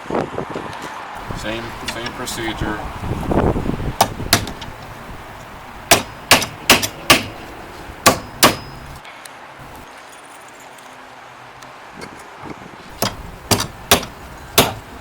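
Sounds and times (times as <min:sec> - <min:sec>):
hammer striking metal: 0:05.9 - 0:09.0, 0:13.0 - 0:14.9.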